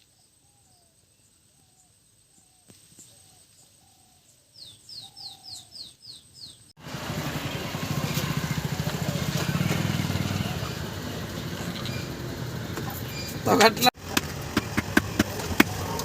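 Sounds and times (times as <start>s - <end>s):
small birds chirping: 0.0s - 6.8s, 7.6s - 13.8s.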